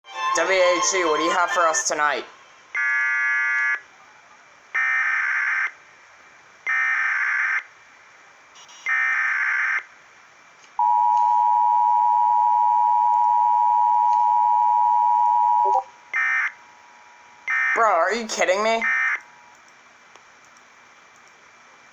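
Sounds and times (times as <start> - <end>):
two-tone attention signal: 10.8 - 15.8.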